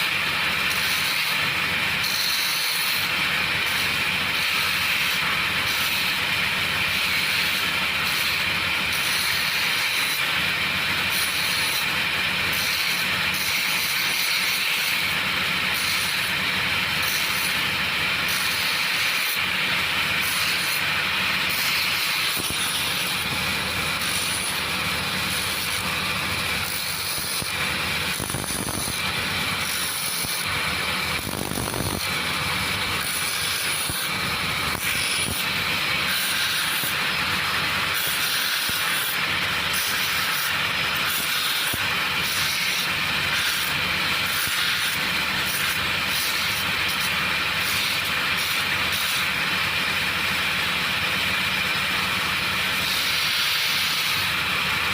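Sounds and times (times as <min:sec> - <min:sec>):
power grinder grinding steel: 0:00.0 - 0:54.9.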